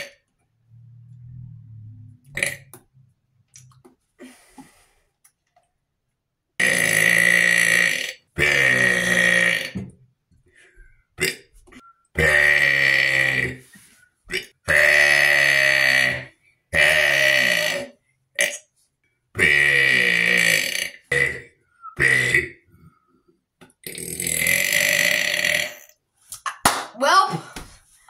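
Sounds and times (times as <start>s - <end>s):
person burping: 0.0s - 0.2s, 2.3s - 2.7s, 6.6s - 10.0s, 11.2s - 11.5s, 12.1s - 13.7s, 14.3s - 18.7s, 19.4s - 22.7s, 23.8s - 26.0s.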